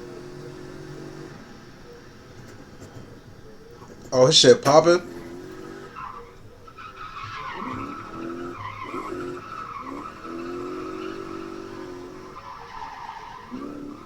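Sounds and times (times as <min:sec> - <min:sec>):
car engine revving: 0:00.0 - 0:14.0
tyre squeal: 0:00.0 - 0:14.0.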